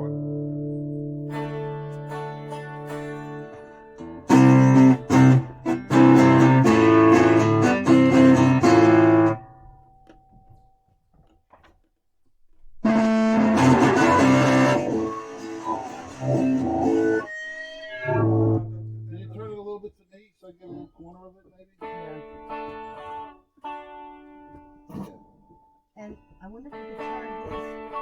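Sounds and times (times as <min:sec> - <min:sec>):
amplified guitar strumming chords: 0:00.0 - 0:09.8, 0:12.8 - 0:17.3, 0:18.0 - 0:19.4, 0:21.8 - 0:25.3, 0:26.7 - 0:28.0.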